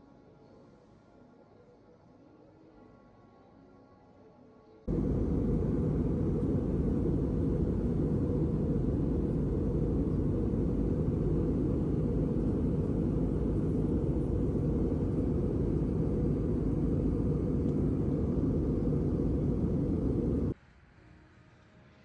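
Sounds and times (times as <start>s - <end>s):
steady low rumble: 4.9s - 20.6s.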